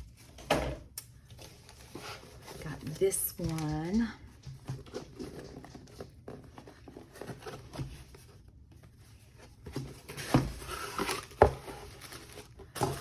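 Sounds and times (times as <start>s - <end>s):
packaging rustling: 4.6s - 13.0s.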